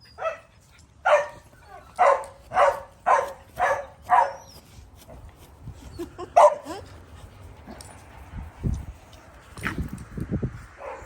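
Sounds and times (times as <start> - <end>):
small dogs barking: 0.2 - 4.6.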